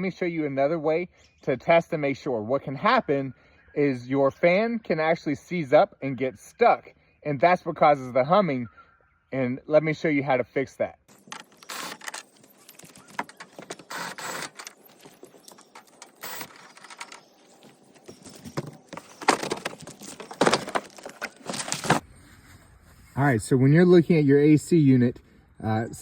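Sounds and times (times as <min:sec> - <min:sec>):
knocks clicks and rattles: 0:11.1 - 0:22.0
rustling: 0:11.1 - 0:23.2.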